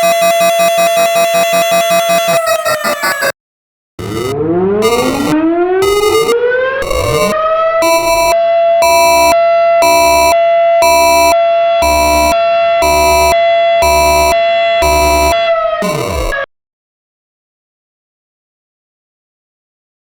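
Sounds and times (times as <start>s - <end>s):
pulsing tornado siren: 0.0s - 3.3s, 4.0s - 16.5s.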